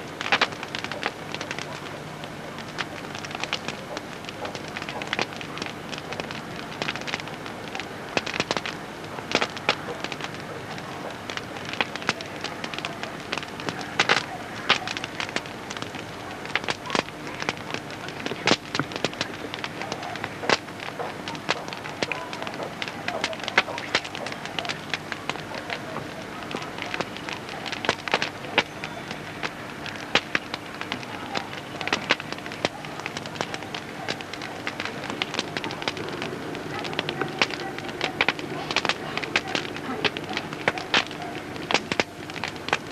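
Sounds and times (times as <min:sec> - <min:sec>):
campfire crackling: 0:00.0 - 0:42.9
steady fire hiss: 0:00.0 - 0:42.9.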